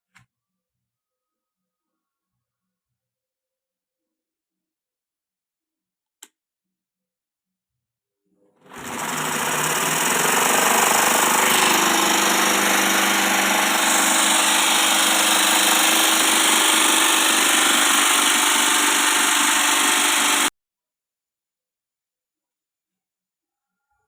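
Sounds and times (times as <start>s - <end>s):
jigsaw mechanical buzz: 8.6s - 20.5s.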